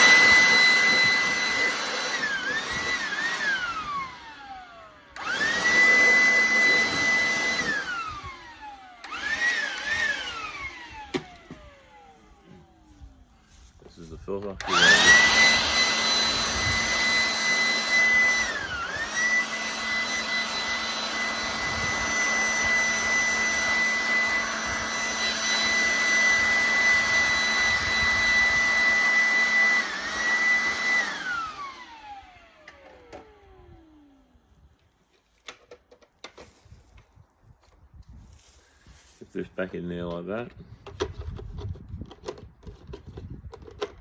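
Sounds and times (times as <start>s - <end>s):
electric motor high whine: 0.0s - 34.8s.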